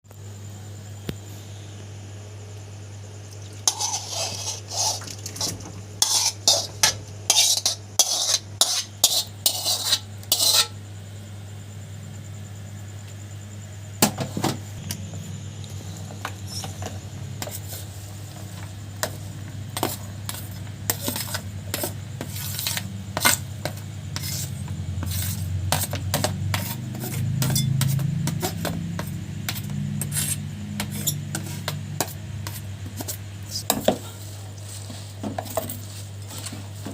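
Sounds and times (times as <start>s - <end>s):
steady low hum: 0.1s - 36.9s
kitchen utensils and dishes clinking: 25.8s - 28.8s.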